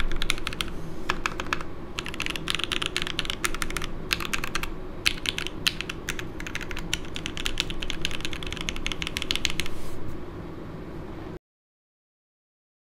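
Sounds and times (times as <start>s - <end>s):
mechanical keyboard clacking: 0.0s - 9.7s
air conditioner hum: 0.0s - 11.4s.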